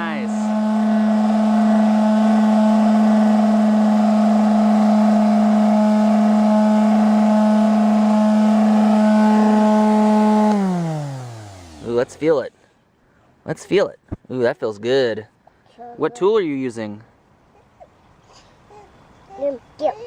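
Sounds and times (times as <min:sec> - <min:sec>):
electric hand sander on wood: 0:00.0 - 0:12.4.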